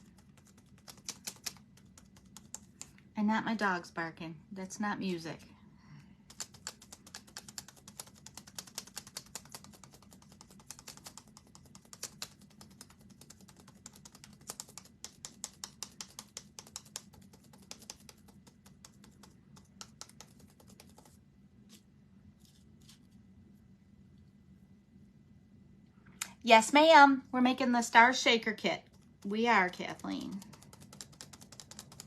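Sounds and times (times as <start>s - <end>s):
computer keyboard typing: 0.0s - 3.0s, 6.3s - 21.2s, 28.8s - 32.0s.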